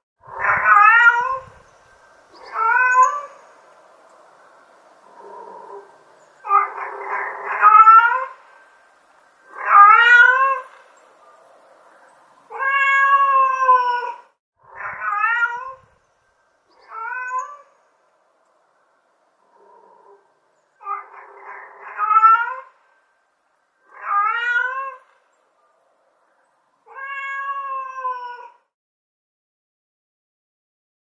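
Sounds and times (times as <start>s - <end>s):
cat meowing: 0.4s - 1.6s, 2.4s - 3.4s, 6.4s - 8.4s, 9.5s - 10.8s, 12.5s - 15.9s, 16.8s - 17.7s, 20.8s - 22.7s, 23.9s - 25.2s, 26.9s - 28.6s.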